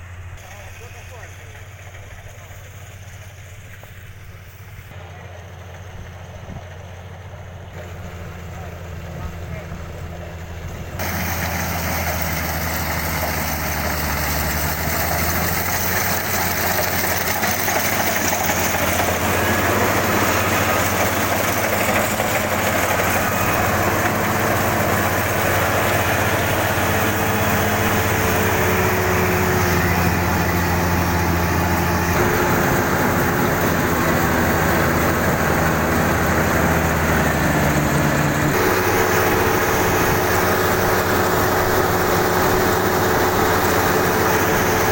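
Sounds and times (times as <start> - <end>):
diesel engine drone: 0.0 - 44.9
threshing machinery clatter: 10.6 - 44.9.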